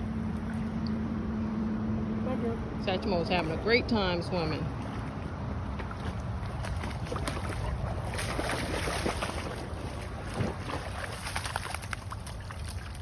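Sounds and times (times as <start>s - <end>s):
dog swimming and splashing: 3.3s - 13.0s.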